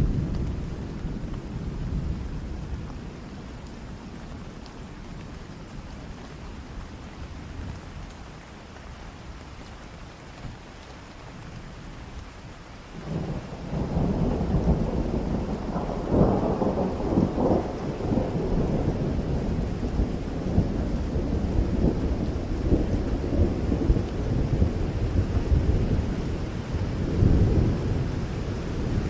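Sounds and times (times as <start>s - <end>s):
steady rain: 0.0s - 29.0s
thunder rolling: 13.0s - 29.0s.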